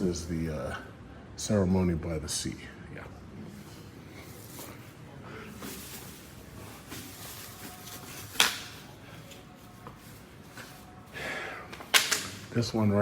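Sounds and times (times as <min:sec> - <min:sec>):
low background noise: 0:00.0 - 0:13.0.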